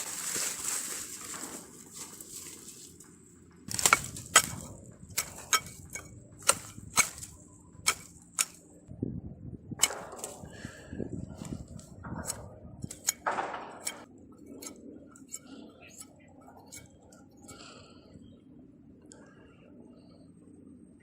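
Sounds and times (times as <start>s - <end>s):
hatchet chopping wood: 3.7s - 8.6s, 9.8s - 10.4s, 12.2s - 14.0s.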